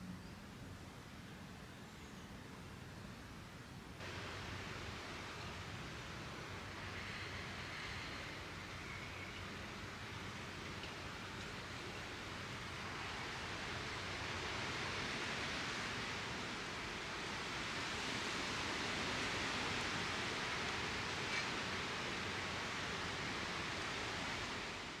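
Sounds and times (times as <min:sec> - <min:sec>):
soft rushing nature ambience: 0:00.0 - 0:25.0.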